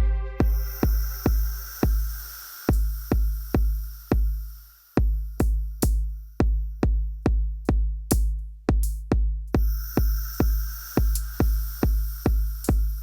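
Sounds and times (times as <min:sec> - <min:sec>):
deep booming kick drum: 0:00.0 - 0:13.0
high hissing layer: 0:00.4 - 0:05.4, 0:09.6 - 0:13.0.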